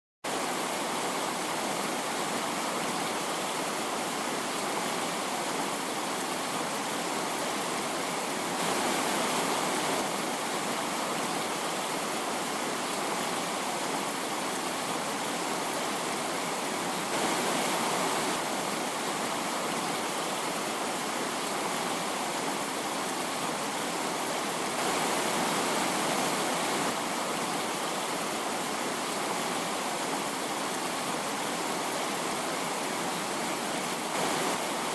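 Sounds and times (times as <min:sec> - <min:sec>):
steady rushing hiss: 0:07.1 - 0:12.1, 0:16.5 - 0:19.4, 0:23.8 - 0:28.6, 0:31.6 - 0:34.9.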